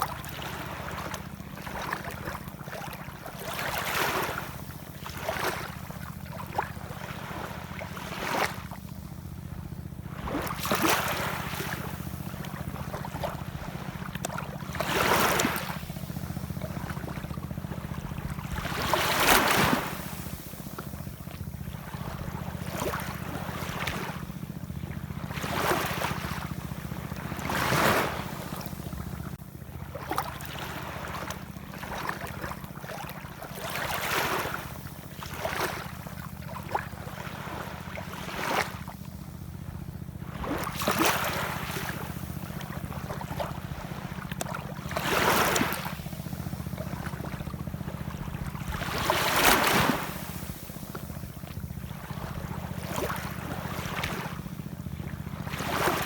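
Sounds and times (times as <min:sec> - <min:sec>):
ocean waves washing ashore: 0:00.0 - 0:56.0
steady low rumble: 0:08.6 - 0:32.8.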